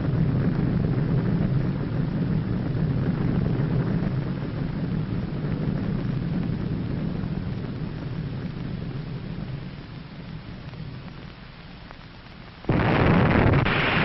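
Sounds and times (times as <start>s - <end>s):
deep explosion rumble: 0.0s - 11.4s, 12.6s - 14.0s.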